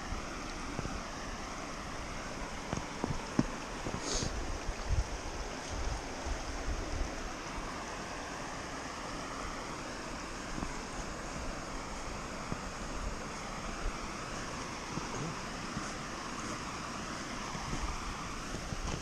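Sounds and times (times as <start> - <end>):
creek water flowing: 0.0 - 19.0
wind buffeting microphone: 2.5 - 7.2.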